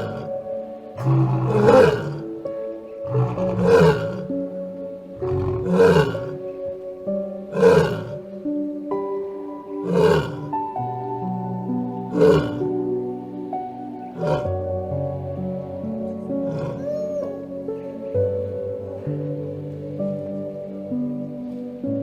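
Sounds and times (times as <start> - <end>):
animal roaring: 0.0 - 0.4, 1.0 - 2.4, 3.0 - 4.3, 5.2 - 6.4, 7.5 - 8.2, 9.8 - 10.6, 12.1 - 12.7, 14.1 - 14.6, 16.5 - 17.1
soft background music: 0.0 - 22.0.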